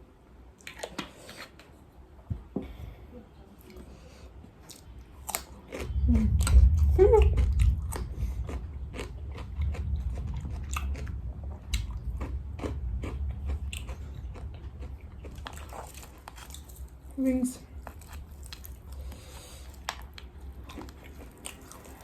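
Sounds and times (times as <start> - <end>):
low chewing rumble: 0.0 - 22.0
crunchy chicken coating crackling: 11.8 - 17.2, 17.8 - 22.0.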